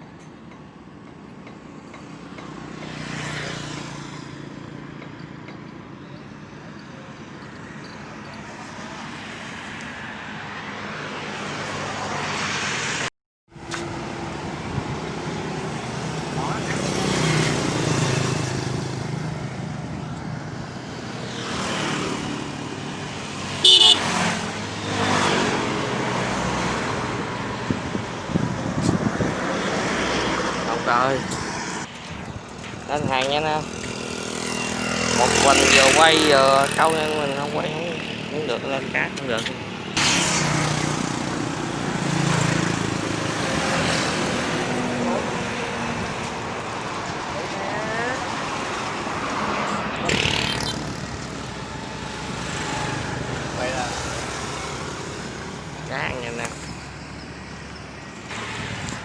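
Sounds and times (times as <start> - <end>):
motor vehicles passing: 2.1 - 59.0
short loud horn toot: 23.6 - 24.2.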